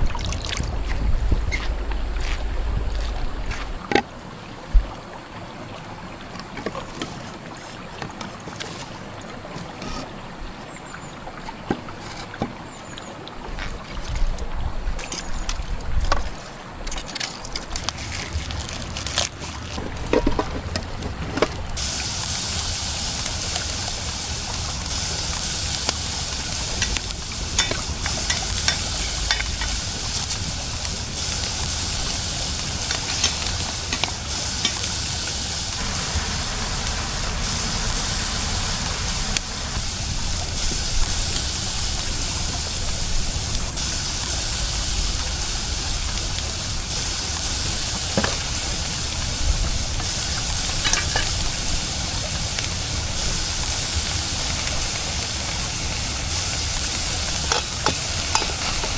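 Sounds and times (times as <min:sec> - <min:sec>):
food sizzling in a pan: 0:09.6 - 0:10.1, 0:21.8 - 0:58.9.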